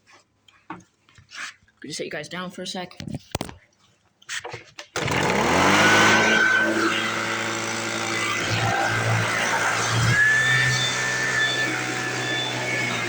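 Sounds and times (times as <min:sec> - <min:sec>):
leaf blower running: 0:05.0 - 0:13.0.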